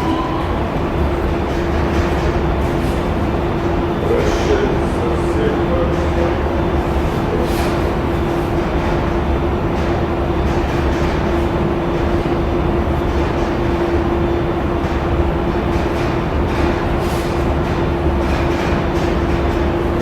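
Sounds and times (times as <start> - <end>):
mid-pitched hum: 0.0 - 11.0.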